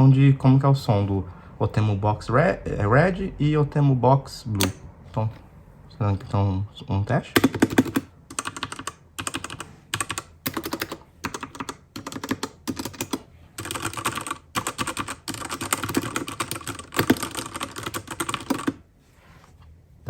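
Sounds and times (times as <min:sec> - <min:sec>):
fast typing on mechanical keyboard: 0:07.4 - 0:18.8.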